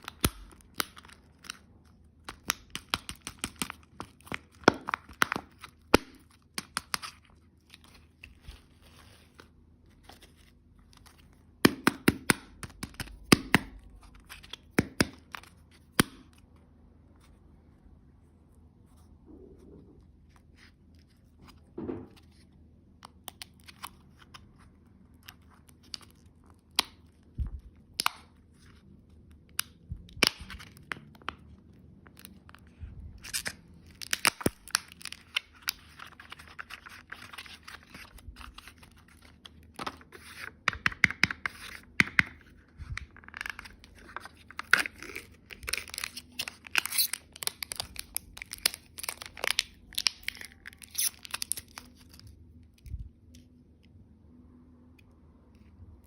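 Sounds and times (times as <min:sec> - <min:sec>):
packaging crinkling and tearing: 0:00.0 - 0:11.6, 0:23.1 - 0:53.6.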